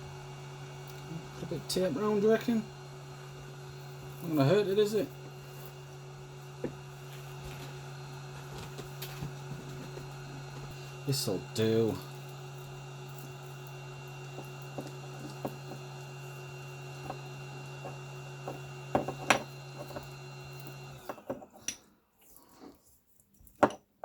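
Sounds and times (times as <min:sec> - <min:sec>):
steady electrical hum: 0:00.0 - 0:22.5.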